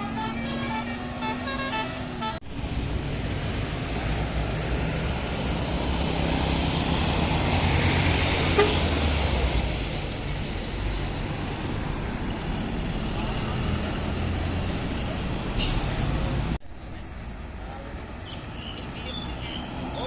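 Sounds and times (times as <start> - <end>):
bus horn playing a tune: 0.0 - 2.4, 8.5 - 9.0
bus engine and road noise: 0.0 - 20.0.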